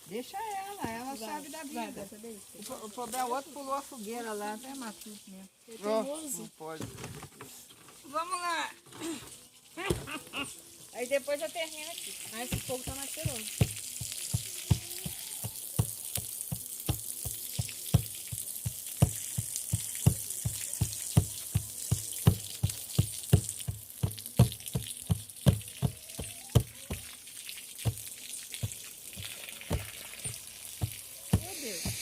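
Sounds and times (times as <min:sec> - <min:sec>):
bonfire crackling and hissing: 0:09.5 - 0:32.0.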